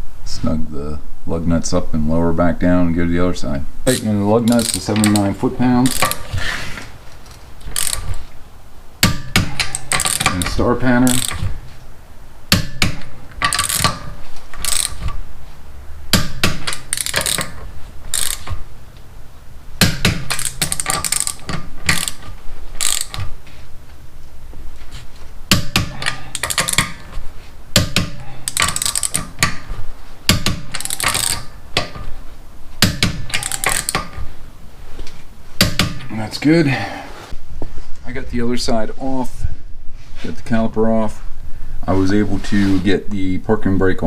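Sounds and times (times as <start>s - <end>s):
ratcheting torque wrench clicking: 3.9s - 6.3s, 7.2s - 8.2s, 9.0s - 11.5s, 13.4s - 15.2s, 16.1s - 18.7s, 19.8s - 23.3s, 25.5s - 27.1s, 27.8s - 29.6s, 30.3s - 32.0s, 32.9s - 34.2s.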